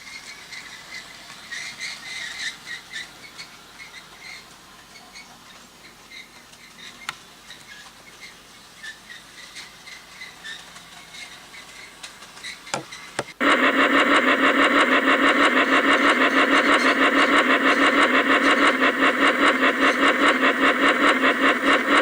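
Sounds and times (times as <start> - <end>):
engine running with rapid pulsing: 13.2 - 22.0
whirring sweeps: 13.4 - 22.0.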